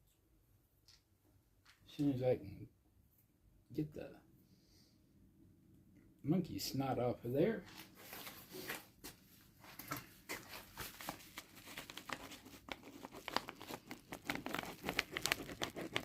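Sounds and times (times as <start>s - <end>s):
paper towel rustling and crinkling: 7.6s - 16.0s.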